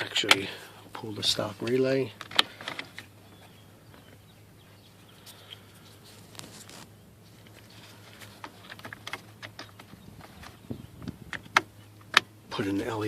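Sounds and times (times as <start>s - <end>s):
steady low hum: 0.0s - 13.0s
hands clicking and rustling: 5.2s - 12.3s.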